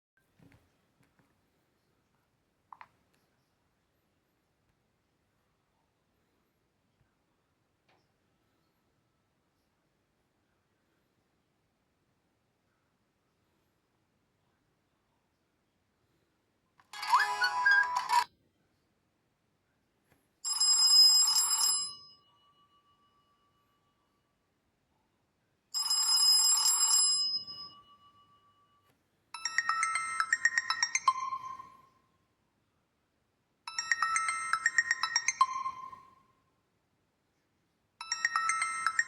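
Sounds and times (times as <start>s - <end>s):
phone chime: 16.9s - 18.3s, 25.8s - 31.9s, 33.7s - 36.2s, 38.0s - 39.0s.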